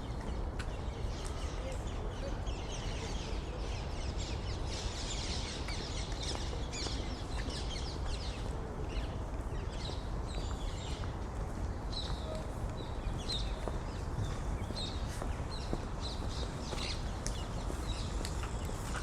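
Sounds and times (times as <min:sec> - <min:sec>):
small birds chirping: 0:11.9 - 0:19.0.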